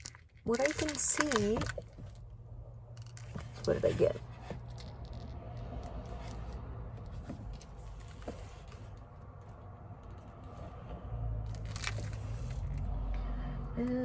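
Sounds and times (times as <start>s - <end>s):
plastic packaging rustling: 0.0s - 2.1s, 11.5s - 12.7s.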